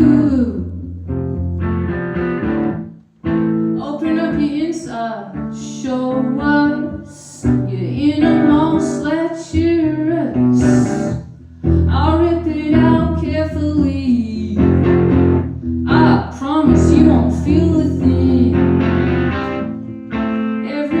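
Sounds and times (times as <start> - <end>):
woman singing: 0.0 - 0.9, 3.8 - 15.1, 15.9 - 19.0, 20.3 - 21.0.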